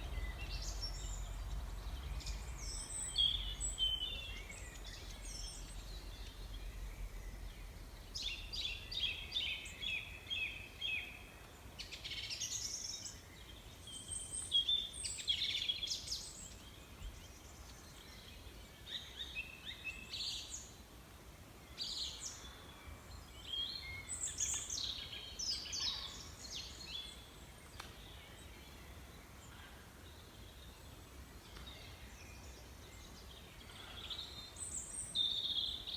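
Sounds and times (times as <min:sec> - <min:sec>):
birds chirping and singing: 0:00.0 - 0:20.7.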